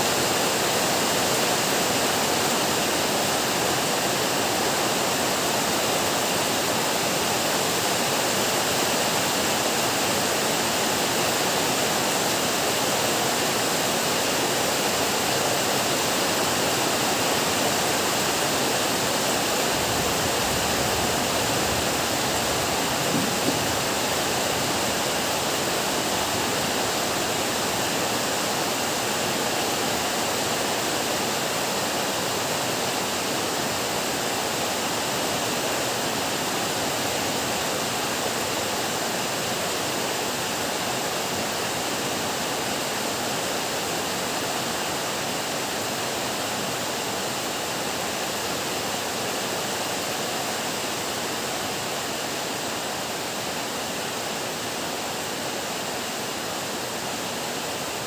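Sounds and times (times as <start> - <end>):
heavy rain pouring: 17.5 - 28.3.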